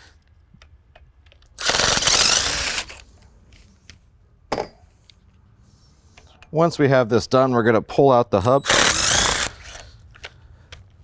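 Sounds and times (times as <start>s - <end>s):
impact wrench rattling: 1.6s - 3.0s.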